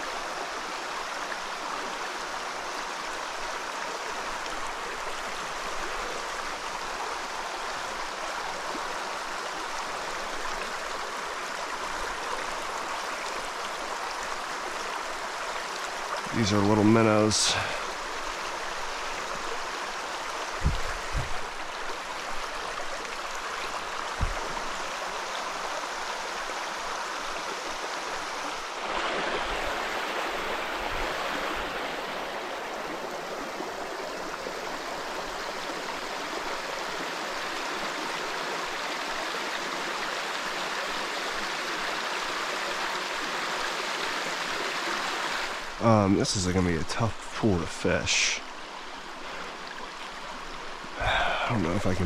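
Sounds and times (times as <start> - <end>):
stream rushing over rocks: 0.0 - 52.0
dull low bumps: 20.6 - 21.6, 24.1 - 24.8.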